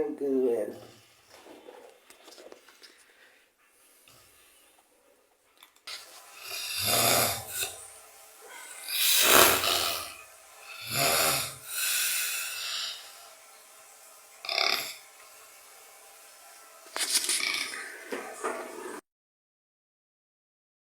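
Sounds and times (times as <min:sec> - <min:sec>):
man snoring loudly: 0:06.4 - 0:07.8, 0:08.7 - 0:13.0, 0:14.4 - 0:15.0
breathy exhale: 0:08.4 - 0:13.2.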